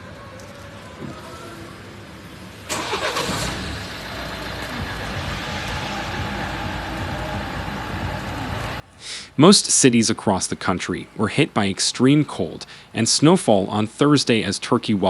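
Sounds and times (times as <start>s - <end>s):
vehicle engine running: 0.7s - 8.9s.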